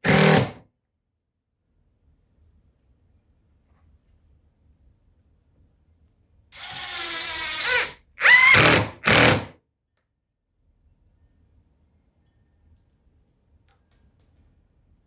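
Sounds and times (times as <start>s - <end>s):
power drill driving screws: 0.0s - 0.6s, 6.6s - 9.5s.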